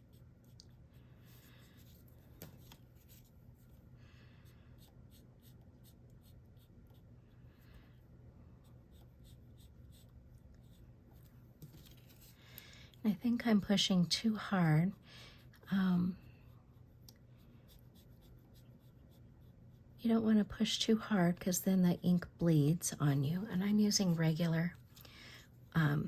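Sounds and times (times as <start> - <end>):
marker scratching on paper: 8.6 - 10.8.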